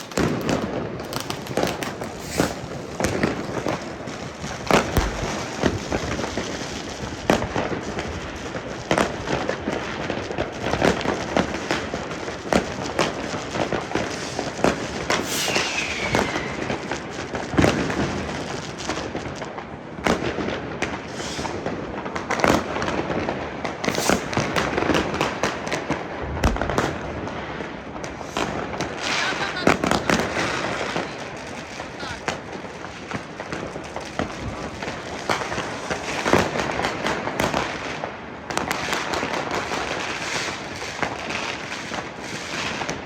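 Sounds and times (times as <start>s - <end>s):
fireworks bangs: 0.0s - 19.3s, 20.0s - 43.0s
fireworks crackling: 0.0s - 43.0s
falling whistle: 15.4s - 16.7s.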